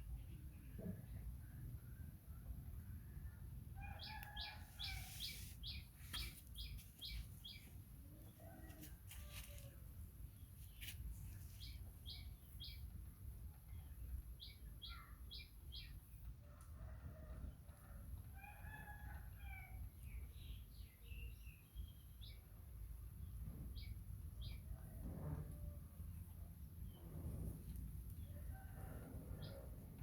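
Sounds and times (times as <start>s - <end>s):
small bird chirping: 4.0s - 7.8s, 13.7s - 16.0s.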